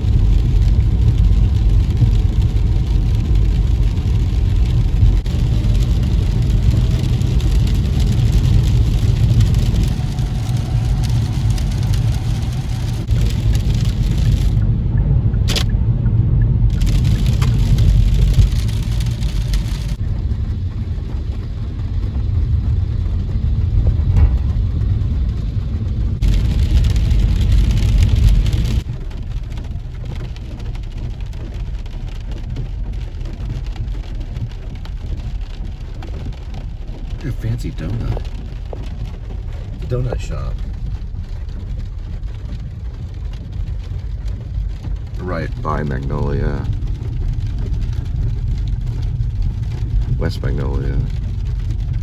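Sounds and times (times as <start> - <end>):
car road noise inside cabin: 0.0 - 52.0.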